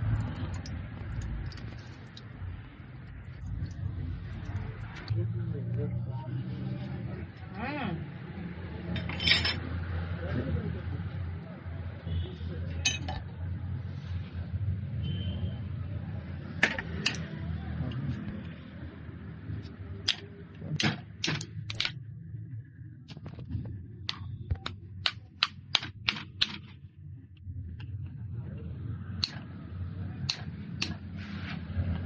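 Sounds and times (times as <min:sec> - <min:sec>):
sharp clicks and knocks: 0:20.1 - 0:22.0, 0:24.1 - 0:26.8.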